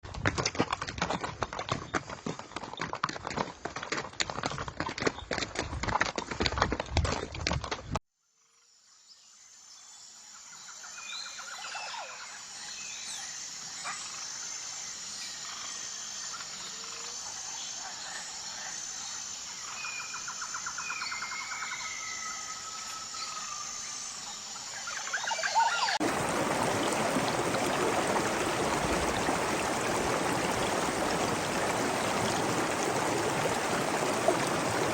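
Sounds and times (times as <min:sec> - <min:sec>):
rushing stream: 0:26.0 - 0:34.9.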